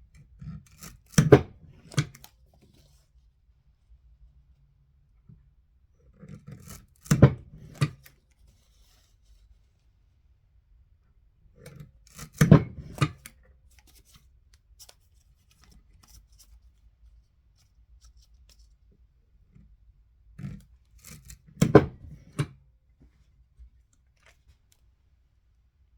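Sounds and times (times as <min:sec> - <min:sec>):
clicks and snips of craft materials: 0:20.4 - 0:22.6.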